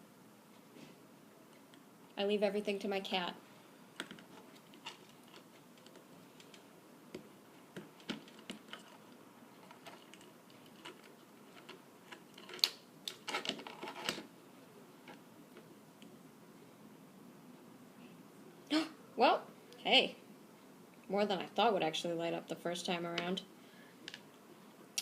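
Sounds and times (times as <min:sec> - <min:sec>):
small parts clicking and tapping: 0:04.0 - 0:14.2.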